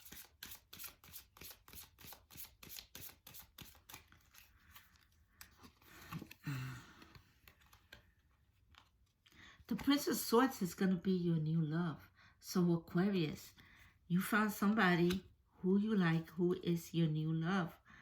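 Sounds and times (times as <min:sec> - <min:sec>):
cards being shuffled: 0:00.0 - 0:09.2, 0:15.0 - 0:15.3.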